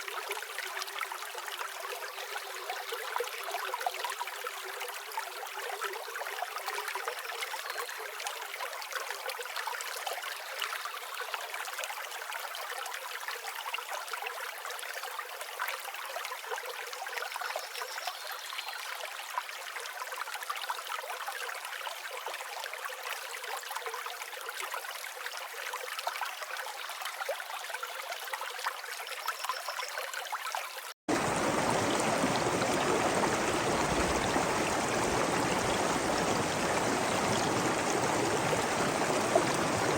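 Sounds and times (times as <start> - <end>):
stream water trickling: 0.0 - 39.9
deep rush of water: 31.1 - 39.9.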